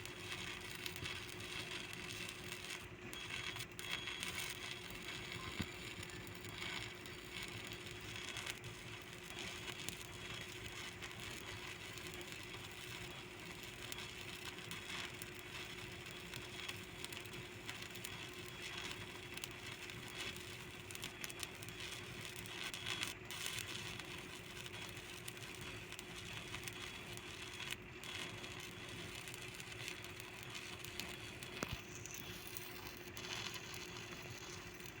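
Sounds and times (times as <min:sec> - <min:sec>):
arc welding crackling: 0:00.0 - 0:35.0
steady hum: 0:00.0 - 0:35.0.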